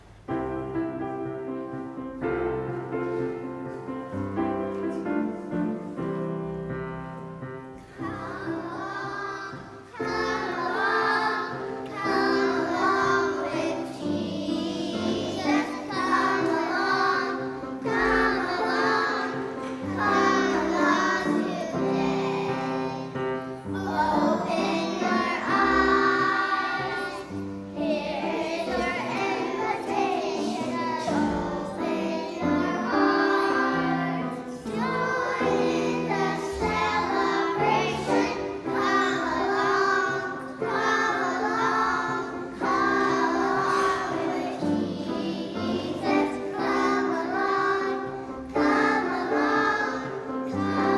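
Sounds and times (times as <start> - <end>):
instrumental accompaniment: 0.0 - 50.9
children's choir singing: 0.6 - 50.9.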